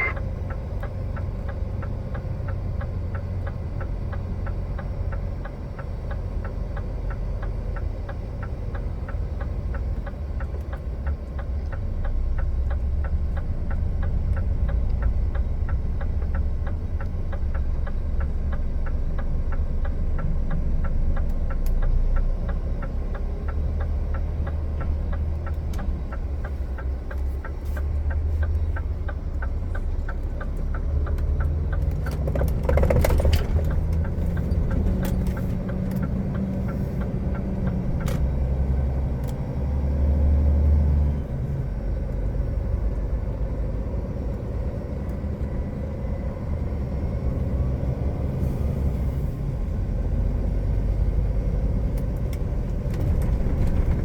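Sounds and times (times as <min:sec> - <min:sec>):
even ticking: 0:00.0 - 0:39.9
diesel engine rumble in cab: 0:00.0 - 0:54.0.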